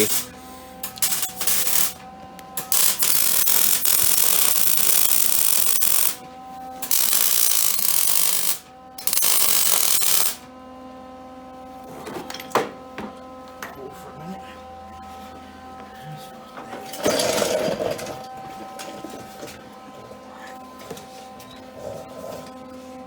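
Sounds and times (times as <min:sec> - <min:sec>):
welding arc crackling and hissing: 0:00.0 - 0:00.3, 0:00.9 - 0:02.0, 0:02.6 - 0:06.2, 0:06.8 - 0:10.4.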